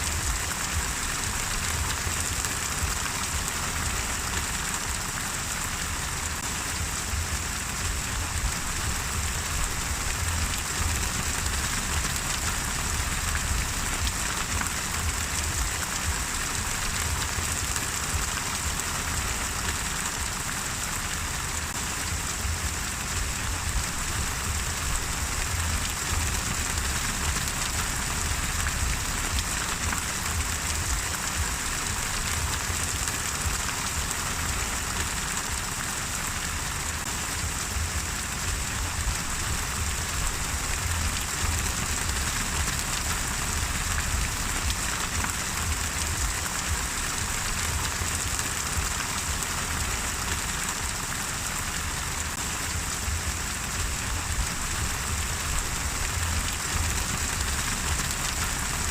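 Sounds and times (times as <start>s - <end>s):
steady rain: 0.0s - 58.9s
low rumble: 6.7s - 18.8s, 21.8s - 33.6s, 37.4s - 48.9s.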